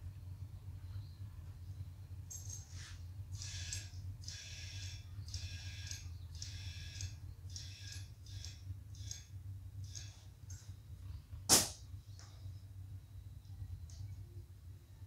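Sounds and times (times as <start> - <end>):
low steady hum: 0.0 - 15.0
loud burst of air: 11.5 - 11.8.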